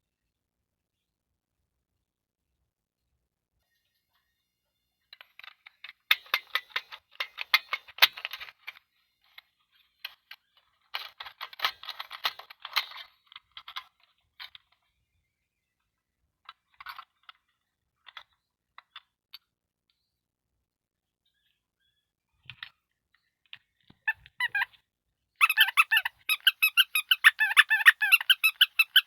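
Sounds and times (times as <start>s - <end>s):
plastic toy pieces clicking: 25.4s - 29.0s.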